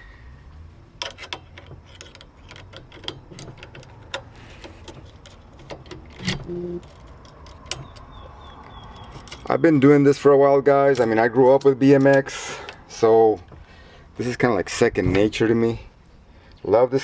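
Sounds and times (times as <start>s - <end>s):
small metal parts clicking: 1.0s - 9.6s.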